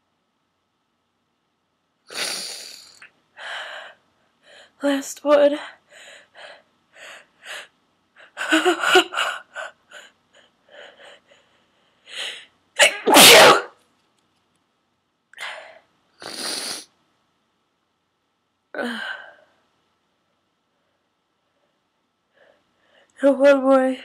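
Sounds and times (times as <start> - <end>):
person sneezing: 12.8 - 13.8.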